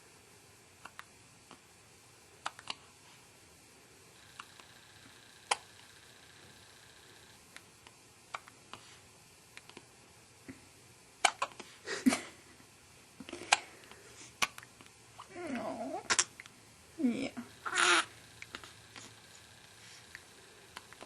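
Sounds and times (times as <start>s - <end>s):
baby hiccuping: 11.2s - 11.6s, 17.6s - 18.1s.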